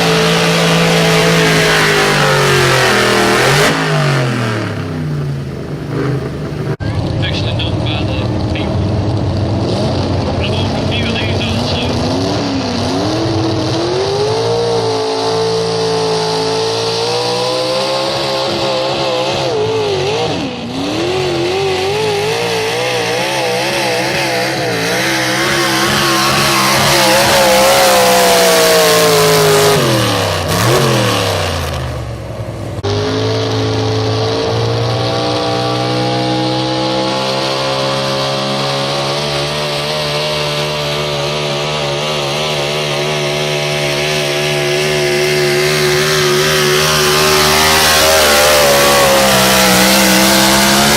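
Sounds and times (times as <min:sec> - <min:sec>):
truck engine at high revs: 0:00.0 - 0:50.9.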